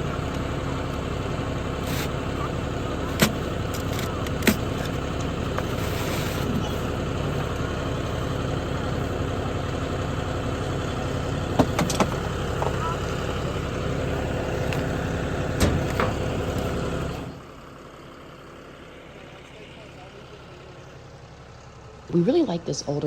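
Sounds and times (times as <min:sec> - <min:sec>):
hay baler droning: 0:00.0 - 0:23.0.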